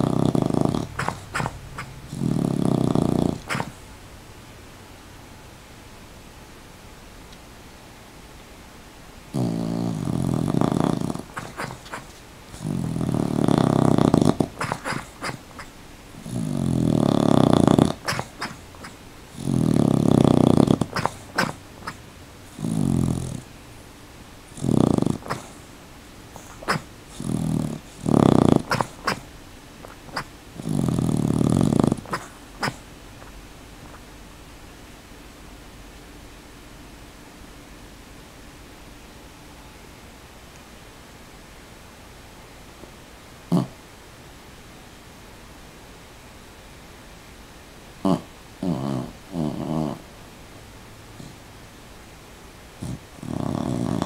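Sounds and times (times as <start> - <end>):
dog snoring: 0.0 - 3.8, 9.3 - 23.5, 24.5 - 25.7, 26.3 - 34.0, 43.5 - 43.8, 48.0 - 50.1, 51.2 - 51.4, 52.8 - 54.0.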